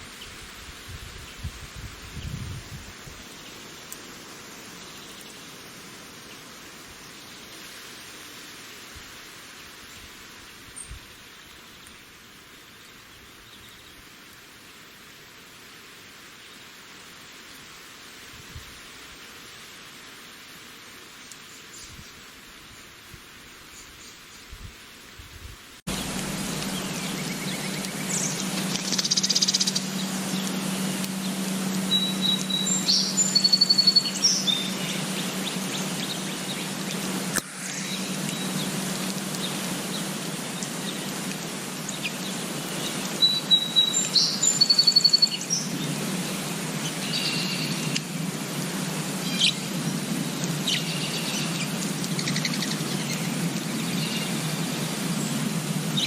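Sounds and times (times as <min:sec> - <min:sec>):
songbirds singing: 0:01.1 - 0:07.6, 0:09.9 - 0:14.1, 0:25.9 - 0:48.2, 0:49.0 - 0:56.0
bird chirps: 0:25.9 - 0:37.0, 0:41.9 - 0:45.8
steady low hum: 0:25.9 - 0:56.0.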